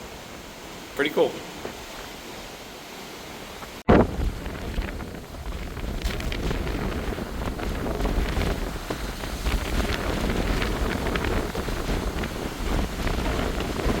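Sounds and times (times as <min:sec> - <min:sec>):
wind buffeting microphone: 0:03.6 - 0:14.0.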